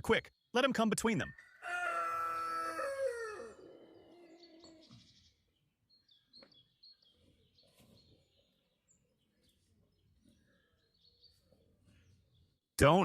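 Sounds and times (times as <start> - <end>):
faint bird chirps: 1.2 - 12.6
rooster crowing: 1.4 - 4.8.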